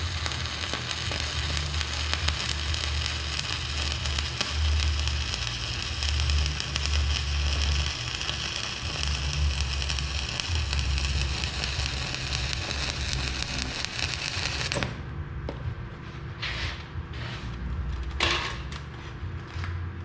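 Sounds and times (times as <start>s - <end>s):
welding arc crackling: 0.0s - 15.0s
steady low hum: 0.0s - 20.0s
short scraping noises: 16.0s - 17.7s.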